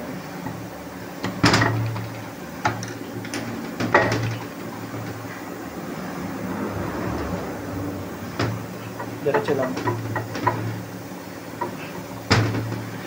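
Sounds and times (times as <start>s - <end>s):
metal parts knocking and clanking: 1.2s - 4.6s, 8.4s - 10.9s.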